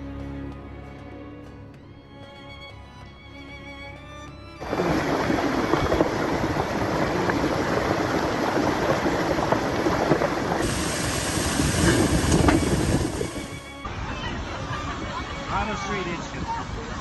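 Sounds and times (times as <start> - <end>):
knocks and splashes in water: 4.6 - 13.5
floodwater rushing: 4.6 - 13.8.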